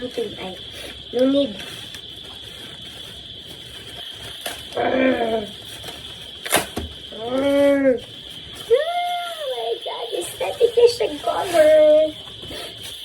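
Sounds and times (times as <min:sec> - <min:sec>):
packaging rustling: 0:00.0 - 0:04.8.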